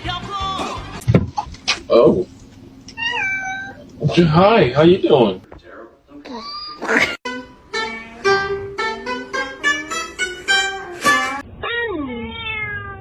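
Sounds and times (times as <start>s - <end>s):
guitar picking notes: 7.3s - 11.4s.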